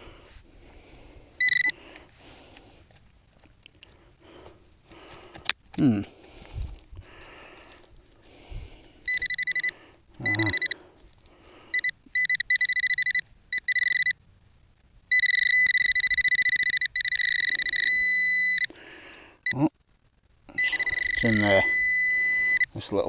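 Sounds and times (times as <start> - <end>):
pinpointer probe beeping rapidly: 1.4 - 1.8, 9.1 - 10.8, 11.7 - 14.2, 15.1 - 18.7, 20.5 - 22.7.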